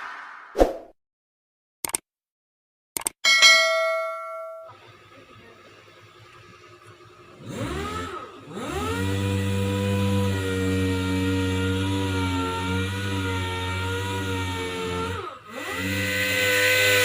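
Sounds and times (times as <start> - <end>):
metallic ding: 3.3 - 4.8
power tool motor whirring: 6.2 - 17.0.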